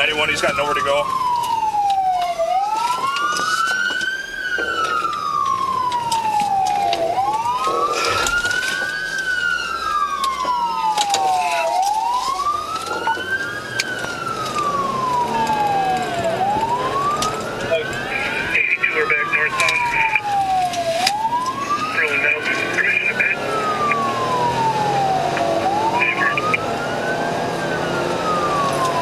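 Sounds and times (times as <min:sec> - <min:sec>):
police siren wailing: 0:00.0 - 0:29.0
second siren: 0:00.0 - 0:29.0.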